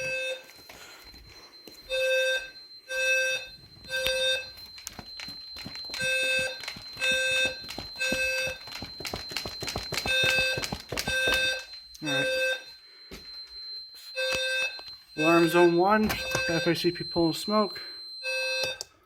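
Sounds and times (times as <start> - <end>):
fire alarm beeps: 0.0 - 19.0
rapid clicks: 4.7 - 11.1.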